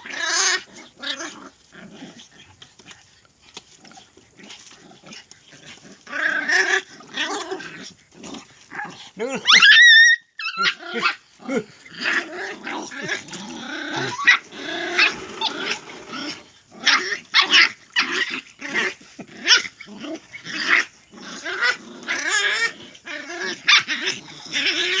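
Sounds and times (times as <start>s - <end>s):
dogs snarling and growling: 0.0s - 10.0s, 10.7s - 25.0s
dogs yelping: 8.8s - 25.0s
dogs barking: 14.0s - 17.6s.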